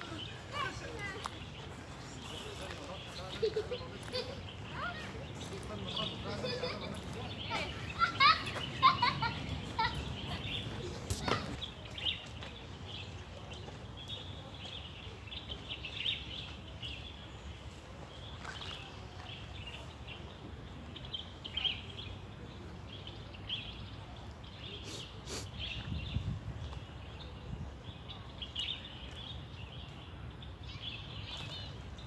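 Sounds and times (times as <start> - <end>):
small birds chirping: 0.0 - 32.0.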